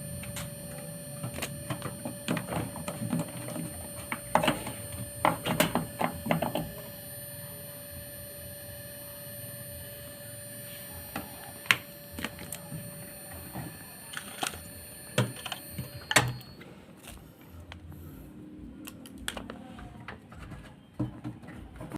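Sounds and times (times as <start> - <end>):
electric motor whine: 0.0 - 16.7.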